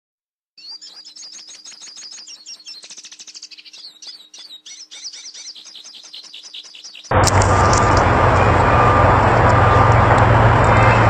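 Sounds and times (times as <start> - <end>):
bird chirping and twittering: 0.6 - 7.8.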